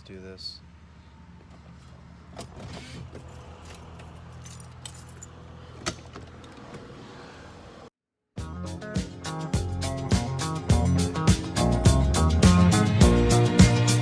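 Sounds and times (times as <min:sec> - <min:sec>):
keys clicking and jingling: 0:03.2 - 0:05.4
upbeat guitar music: 0:08.4 - 0:14.0.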